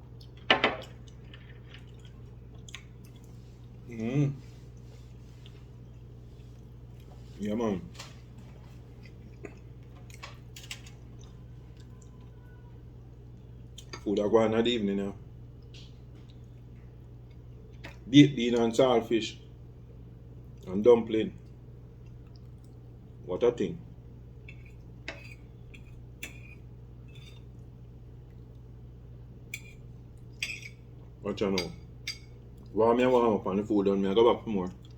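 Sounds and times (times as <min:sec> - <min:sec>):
person chewing food: 0:00.0 - 0:03.9, 0:04.6 - 0:07.2, 0:08.6 - 0:12.4
steady low hum: 0:00.0 - 0:34.9.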